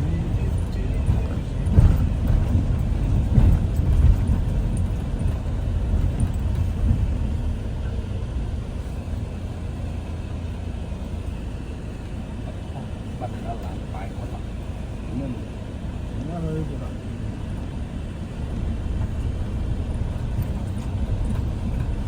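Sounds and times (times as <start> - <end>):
vehicle bumps: 0.0 - 8.1, 17.3 - 22.0
road vehicle rumbling: 0.0 - 22.0.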